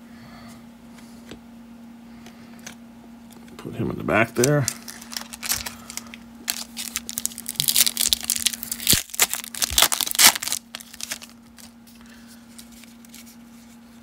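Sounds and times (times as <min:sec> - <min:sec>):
steady low hum: 0:00.0 - 0:14.0
wrapper tearing and crinkling: 0:04.4 - 0:11.8.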